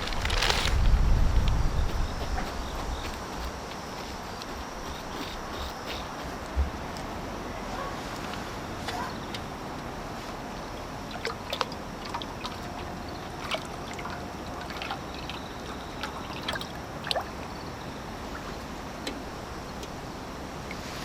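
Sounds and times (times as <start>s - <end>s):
steady hiss: 0.0s - 11.1s, 17.3s - 21.0s
water drops plinking into water: 11.1s - 17.4s.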